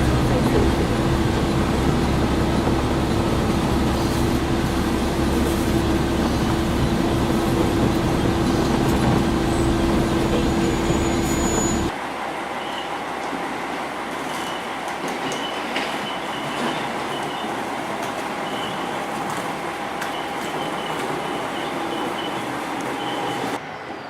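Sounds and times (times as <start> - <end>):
diesel railcar rumbling: 0.0 - 24.0
high-pitched wheel squeals: 9.4 - 11.9.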